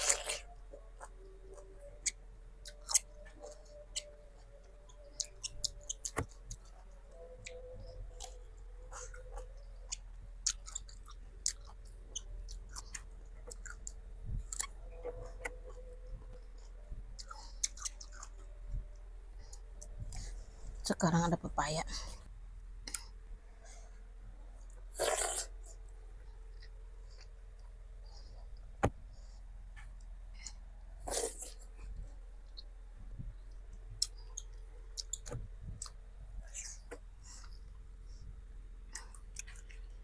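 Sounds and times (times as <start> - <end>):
wet chewing crunches: 0.0 - 4.1.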